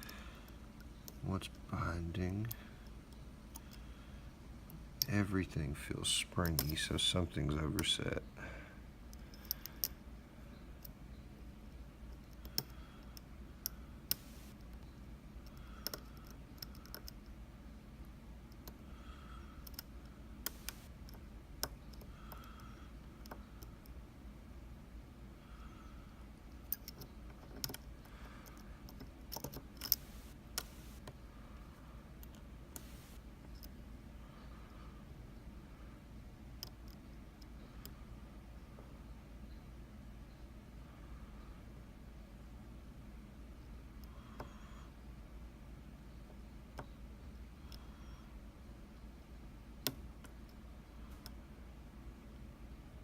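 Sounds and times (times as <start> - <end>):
lock pick metallic clicks: 6.4 - 6.9, 15.4 - 17.3, 26.6 - 31.1.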